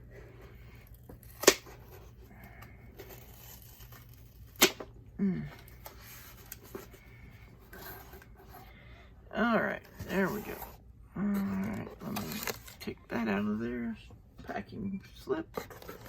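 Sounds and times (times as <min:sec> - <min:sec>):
package snapping open: 0:04.5 - 0:04.8
person grunting: 0:05.2 - 0:05.6
packaging rustling and tearing: 0:11.6 - 0:12.8.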